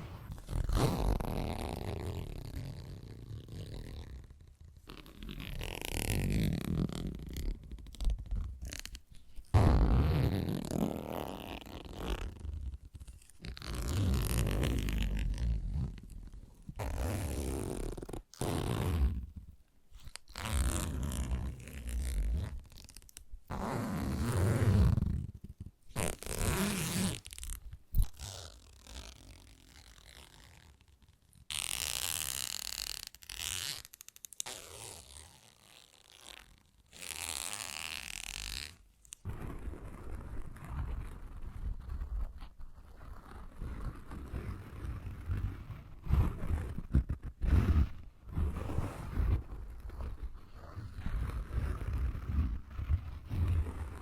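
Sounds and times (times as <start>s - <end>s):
fingertips scratching microphone: 39.2s - 54.0s.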